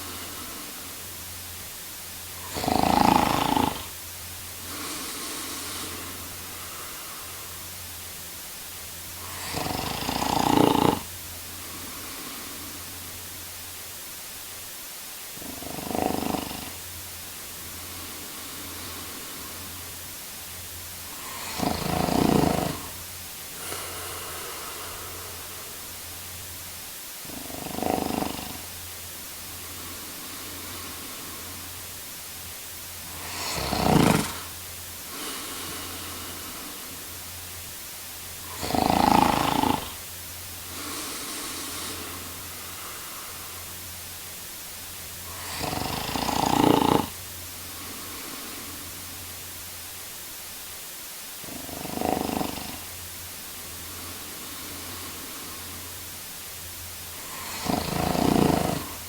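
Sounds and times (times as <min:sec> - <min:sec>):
man snoring: 0:00.0 - 0:01.2, 0:02.3 - 0:04.0, 0:04.6 - 0:07.7, 0:09.1 - 0:13.1, 0:15.4 - 0:16.8, 0:17.7 - 0:20.0, 0:21.0 - 0:26.0, 0:27.2 - 0:28.8, 0:29.5 - 0:31.9, 0:33.0 - 0:37.2, 0:38.4 - 0:43.8, 0:45.2 - 0:49.2, 0:51.4 - 0:53.0, 0:53.7 - 0:56.0, 0:57.1 - 0:59.0
soft breathing: 0:00.0 - 0:01.3, 0:02.3 - 0:08.0, 0:17.3 - 0:26.2, 0:33.0 - 0:37.4, 0:38.3 - 0:44.2, 0:45.1 - 0:49.4, 0:52.6 - 0:59.0.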